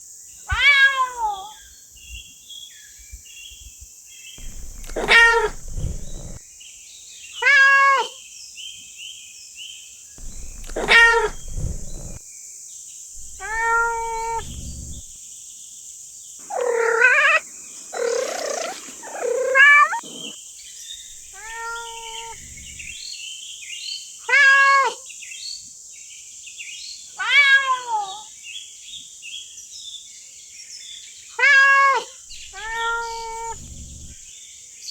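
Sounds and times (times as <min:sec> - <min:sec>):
cat meowing: 0:00.5 - 0:01.5, 0:04.4 - 0:06.4, 0:10.2 - 0:12.2, 0:13.2 - 0:15.2, 0:16.4 - 0:20.4, 0:21.1 - 0:23.0, 0:24.3 - 0:25.0, 0:27.2 - 0:28.2, 0:31.4 - 0:34.2
steady high hiss: 0:04.4 - 0:06.4, 0:10.2 - 0:12.2, 0:13.2 - 0:15.2, 0:21.1 - 0:23.0, 0:32.3 - 0:34.2.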